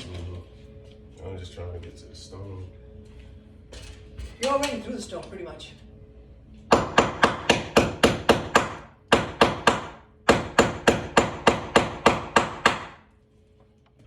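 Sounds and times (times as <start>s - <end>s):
hammer striking nail: 6.7s - 13.0s.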